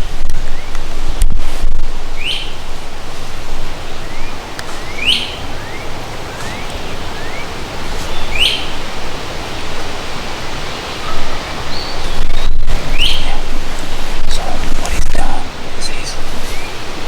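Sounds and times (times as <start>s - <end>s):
strong wind on microphone: 0.0s - 17.0s
bird chirps: 2.1s - 2.7s, 3.8s - 9.1s, 10.6s - 14.4s, 15.2s - 16.8s.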